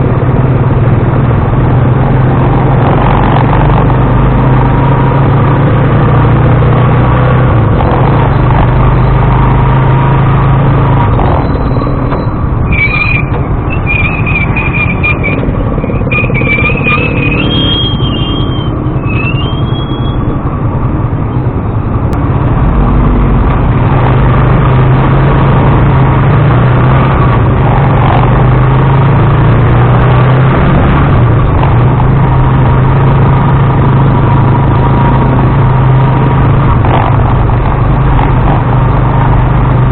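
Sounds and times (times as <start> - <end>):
road and vibration noise: 0.0 - 39.9
wavering high-pitched tone: 11.3 - 20.4.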